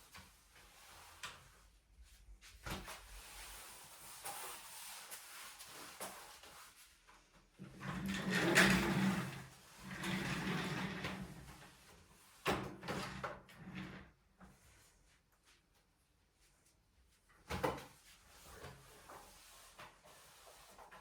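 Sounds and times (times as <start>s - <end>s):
drawer sliding and scraping: 7.7s - 11.8s.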